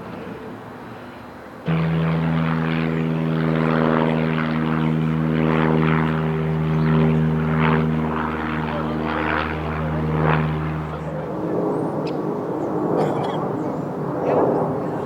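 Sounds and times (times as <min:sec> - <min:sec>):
aircraft engines droning: 0:00.0 - 0:15.0.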